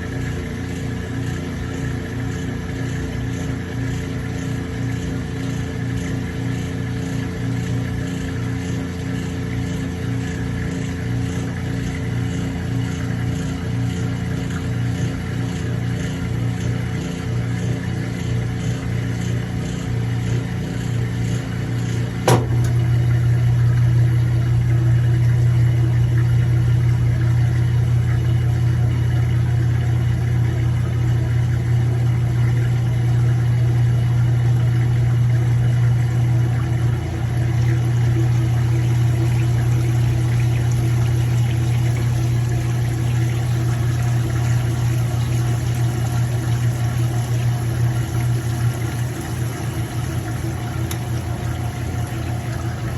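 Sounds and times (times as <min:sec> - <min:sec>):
washing machine motor hum: 0:00.0 - 0:52.9
washing machine click: 0:22.2 - 0:23.1, 0:49.6 - 0:52.9.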